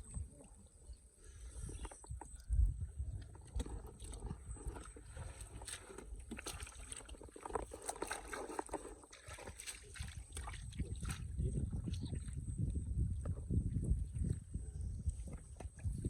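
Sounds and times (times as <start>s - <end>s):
shallow water splashing: 3.3s - 12.4s.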